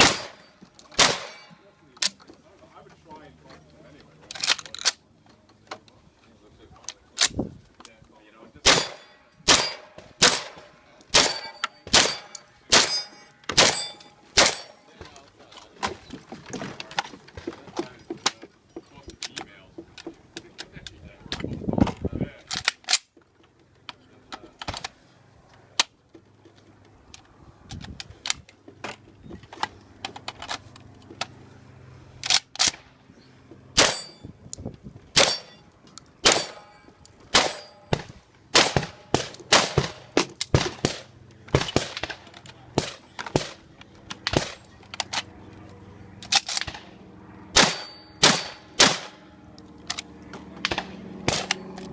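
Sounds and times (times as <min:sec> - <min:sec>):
metallic clanks and bangs: 0:00.0 - 0:01.7, 0:08.6 - 0:14.9, 0:35.2 - 0:35.6, 0:36.2 - 0:43.6.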